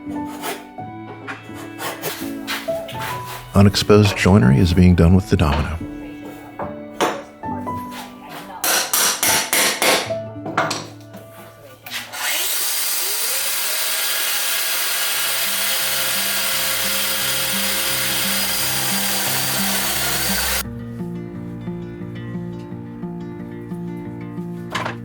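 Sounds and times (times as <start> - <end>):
power tool motor whirring: 12.1 - 20.6.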